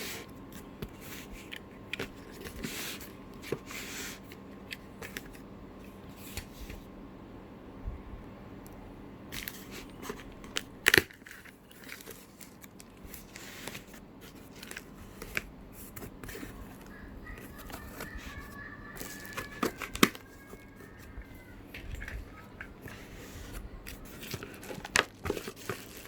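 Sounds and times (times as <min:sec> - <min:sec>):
packaging rustling and crinkling: 0:09.3 - 0:26.0.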